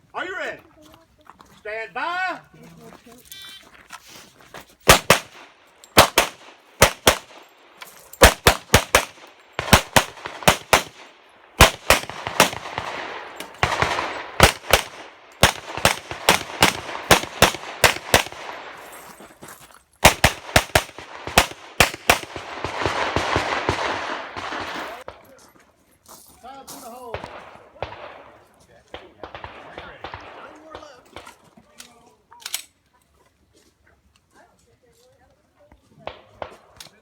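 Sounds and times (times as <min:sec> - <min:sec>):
pistol shots: 0:04.9 - 0:18.8, 0:20.0 - 0:25.1, 0:27.1 - 0:31.3.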